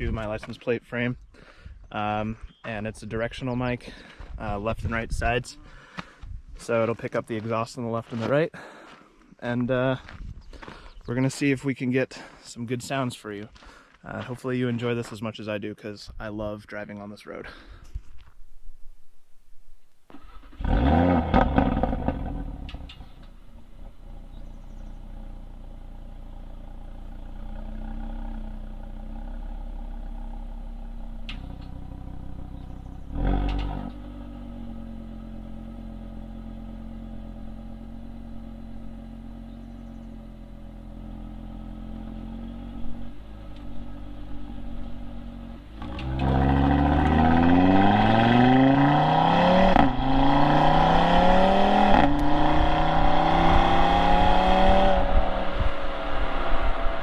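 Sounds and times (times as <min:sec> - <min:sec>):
car engine revving: 0:20.1 - 0:57.0.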